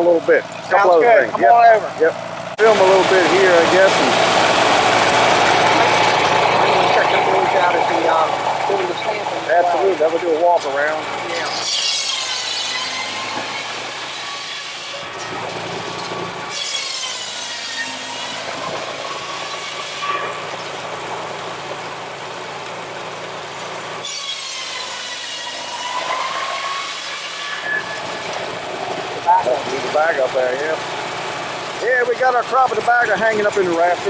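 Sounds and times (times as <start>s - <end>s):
low engine drone: 0.0s - 11.6s
circular saw whining: 0.0s - 22.1s, 23.5s - 34.0s.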